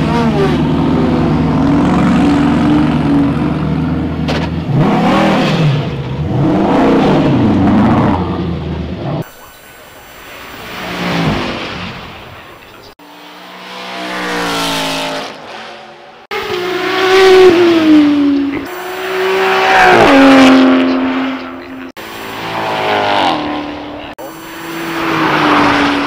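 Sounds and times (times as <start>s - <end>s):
car engines accelerating past: 13.0s - 26.0s.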